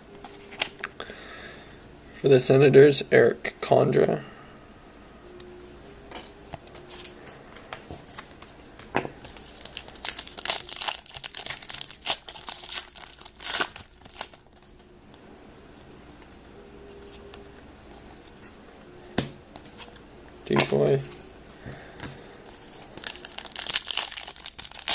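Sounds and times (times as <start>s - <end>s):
foil wrapper crinkling and tearing: 9.2s - 14.7s, 22.6s - 24.9s.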